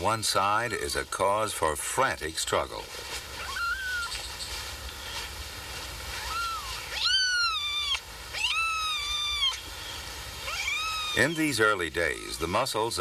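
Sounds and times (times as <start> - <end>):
newborn kittens mewing: 3.4 - 4.2, 6.2 - 9.7, 10.4 - 11.8.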